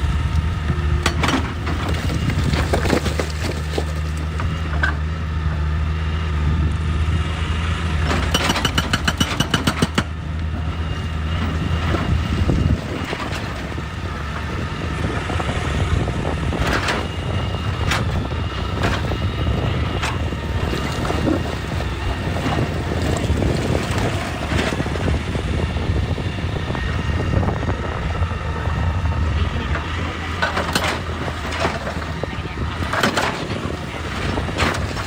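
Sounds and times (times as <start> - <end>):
excavator diesel engine drone: 0.0 - 35.0
sharp knocks of metal or rock: 8.2 - 10.1.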